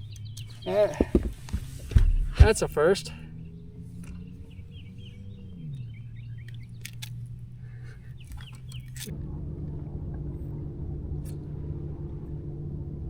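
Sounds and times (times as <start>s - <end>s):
bird chirps: 0.0s - 1.1s, 3.2s - 9.1s
boat motor hum: 0.0s - 13.0s
sharp clicks: 6.4s - 7.4s.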